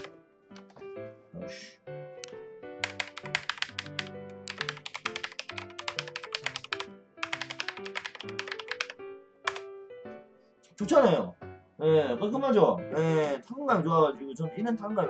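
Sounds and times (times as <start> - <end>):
background music: 0.0 - 15.0
fast typing on mechanical keyboard: 2.8 - 9.6.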